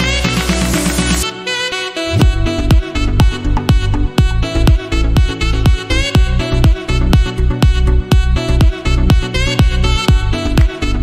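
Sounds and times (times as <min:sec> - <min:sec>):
electronic dance music: 0:00.0 - 0:01.4, 0:02.0 - 0:11.0
melodic synth line: 0:02.0 - 0:03.3
steady kick drum: 0:02.1 - 0:10.8.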